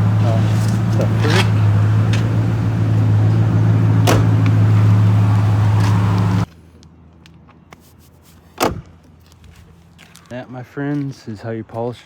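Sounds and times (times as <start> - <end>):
car wash machine humming: 0.0 - 6.5.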